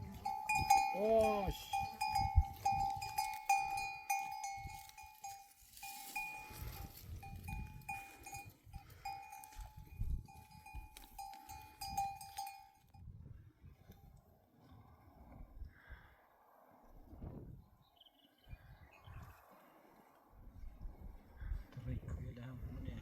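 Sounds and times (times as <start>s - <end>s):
metal neck bell clanking: 0.0s - 12.8s.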